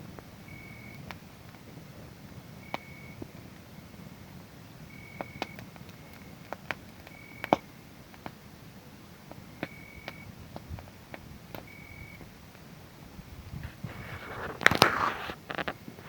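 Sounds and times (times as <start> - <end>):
wood fire crackling: 0.0 - 16.0
cricket trilling: 0.5 - 1.0, 4.9 - 6.4, 7.0 - 7.6, 9.6 - 10.3, 11.6 - 12.2
sharp pops: 13.6 - 16.0.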